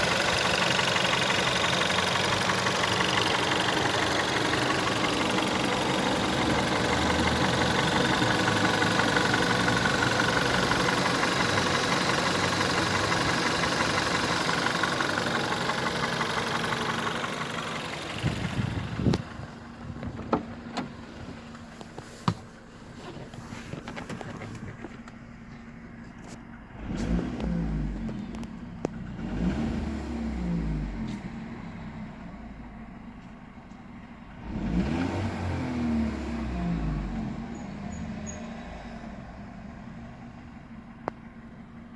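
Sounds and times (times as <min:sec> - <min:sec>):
car engine knocking at idle: 0:00.0 - 0:22.5.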